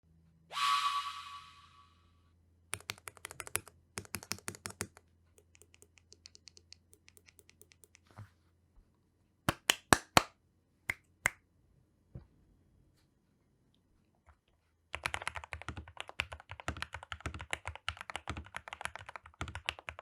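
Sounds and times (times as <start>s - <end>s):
mechanical keyboard typing: 2.7s - 8.0s, 14.9s - 20.0s.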